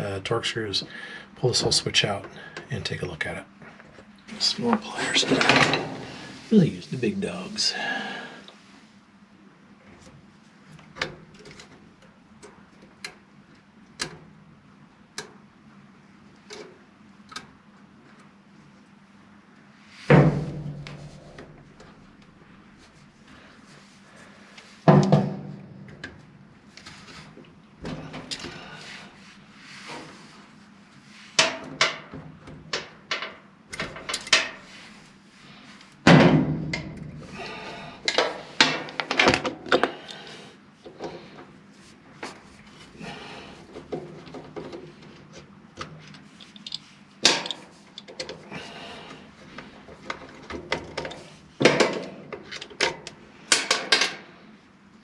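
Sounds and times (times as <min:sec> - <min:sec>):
pliers clicking and knocking on metal: 0:46.4 - 0:48.4.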